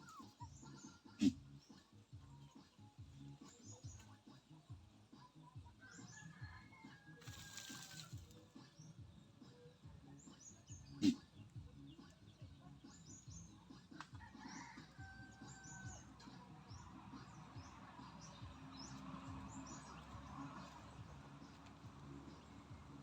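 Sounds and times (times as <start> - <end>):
chickens chirping: 0.0 - 1.4.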